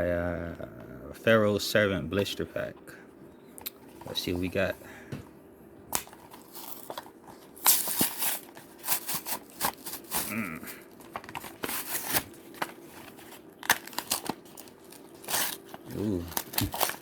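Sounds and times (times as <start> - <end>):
plastic packaging tearing: 5.9 - 17.0.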